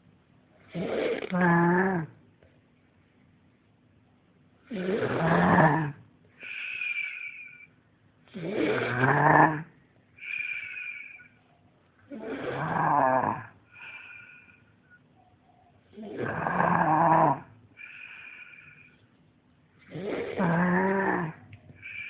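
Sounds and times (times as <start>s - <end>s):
person snoring: 0.7s - 2.1s, 4.7s - 7.6s, 8.3s - 11.3s, 12.1s - 14.6s, 16.0s - 18.9s, 19.8s - 22.0s
high whistling breath: 6.4s - 7.7s, 10.2s - 11.4s, 21.7s - 22.0s.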